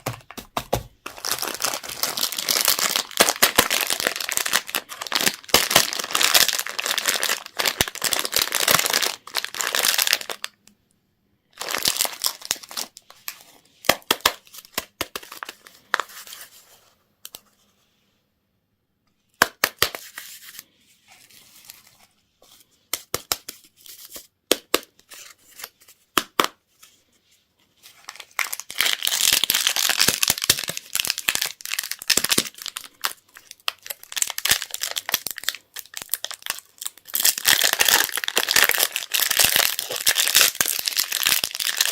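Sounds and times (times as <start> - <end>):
wrappers crinkling and tearing: 1.0 - 10.5, 11.6 - 16.0, 28.0 - 41.9.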